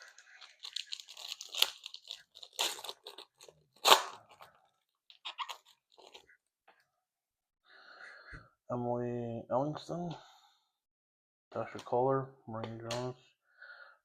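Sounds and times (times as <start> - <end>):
foil wrapper crinkling and tearing: 0.0 - 6.3.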